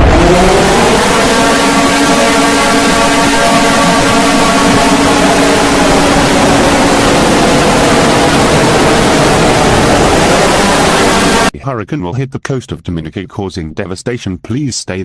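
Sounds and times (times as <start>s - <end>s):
harsh static alarm noise: 0.0s - 11.5s.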